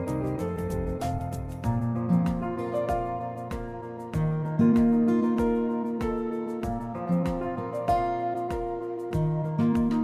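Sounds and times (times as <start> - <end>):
gentle instrumental music: 0.0 - 10.0.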